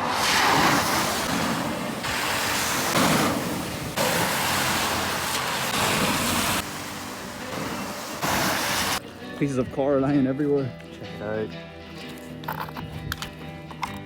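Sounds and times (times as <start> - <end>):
floodwater rushing and splashing: 0.0 - 9.0.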